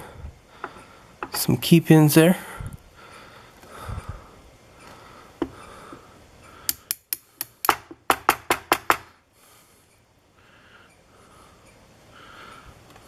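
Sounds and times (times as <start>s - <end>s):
sharp metallic clicks and taps: 6.7s - 9.0s.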